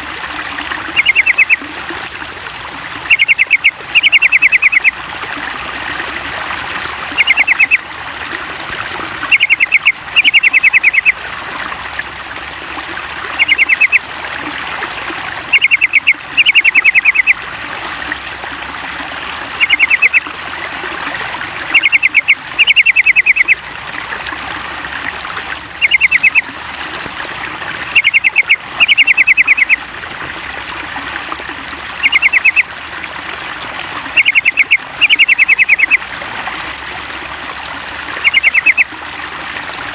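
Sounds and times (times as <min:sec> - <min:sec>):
water trickling: 0:00.0 - 0:39.9
bulbul calls: 0:00.9 - 0:01.6, 0:03.1 - 0:05.0, 0:07.1 - 0:07.8, 0:09.2 - 0:11.1, 0:13.4 - 0:14.0, 0:15.5 - 0:17.4, 0:19.6 - 0:20.2, 0:21.7 - 0:23.6, 0:25.8 - 0:26.5, 0:27.9 - 0:29.8, 0:32.0 - 0:32.7, 0:34.2 - 0:36.0, 0:38.2 - 0:38.9.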